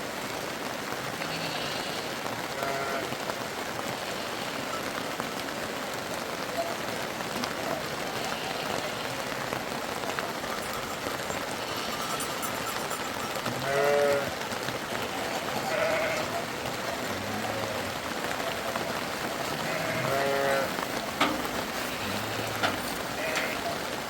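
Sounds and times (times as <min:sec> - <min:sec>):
rain hiss: 0:00.0 - 0:24.0
sheep bleating: 0:01.2 - 0:03.1, 0:08.1 - 0:09.2, 0:11.5 - 0:12.5, 0:13.4 - 0:14.4, 0:15.0 - 0:18.1, 0:19.2 - 0:23.8.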